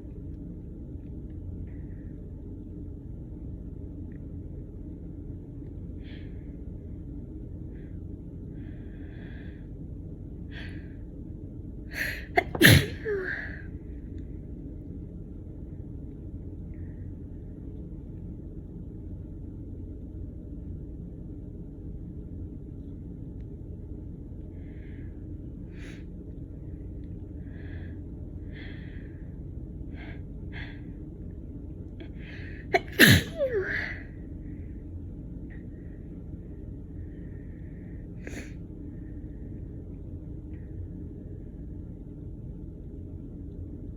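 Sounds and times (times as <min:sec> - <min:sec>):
woman sneezing: 0:12.0 - 0:13.5, 0:32.7 - 0:34.0.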